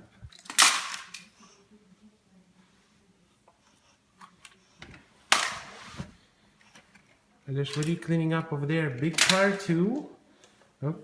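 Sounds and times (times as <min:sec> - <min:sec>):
toys clattering: 0:00.3 - 0:01.3, 0:08.9 - 0:09.7.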